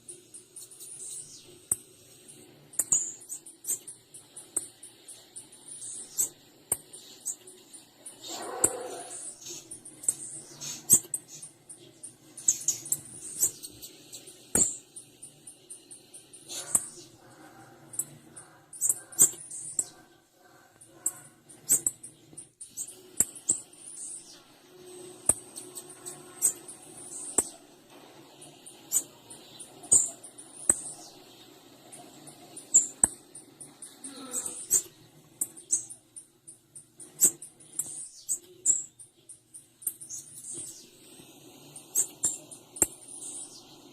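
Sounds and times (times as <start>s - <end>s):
bird high-pitched chips: 0.0s - 43.9s.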